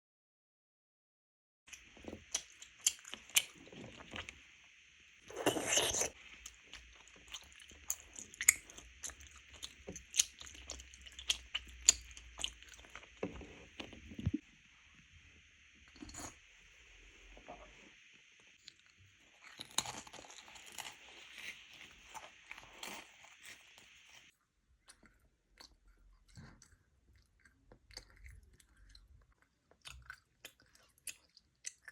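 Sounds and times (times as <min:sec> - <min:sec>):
crunchy eating: 0:01.7 - 0:04.4, 0:05.2 - 0:14.4, 0:18.6 - 0:31.9
food being chewed: 0:01.7 - 0:04.4, 0:05.3 - 0:14.4, 0:15.9 - 0:16.4, 0:18.6 - 0:31.9
faint steady hiss: 0:01.7 - 0:24.3.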